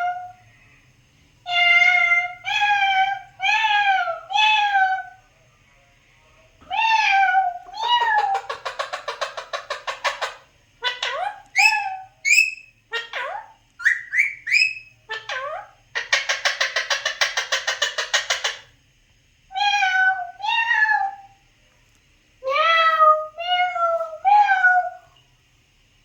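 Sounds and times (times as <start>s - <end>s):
parakeet calling: 1.5s - 5.2s, 6.7s - 18.8s.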